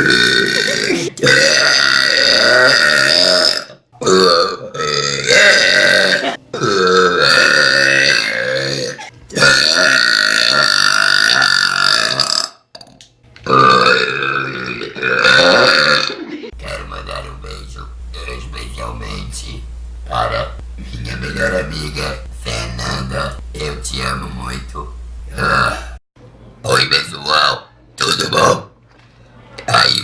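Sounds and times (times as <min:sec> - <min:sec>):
person belching loudly: 0:00.0 - 0:16.3, 0:25.3 - 0:26.0.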